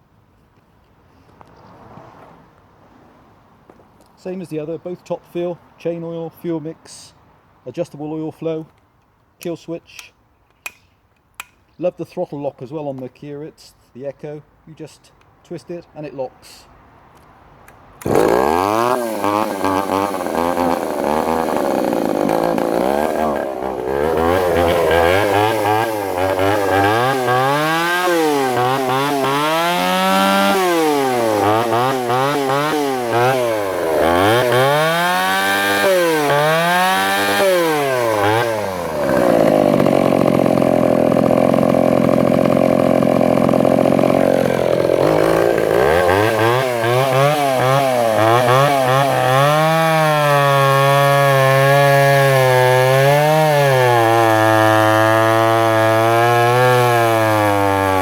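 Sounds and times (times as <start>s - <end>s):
chainsaw cutting wood: 18.0s - 58.0s
chainsaw revving: 18.0s - 58.0s.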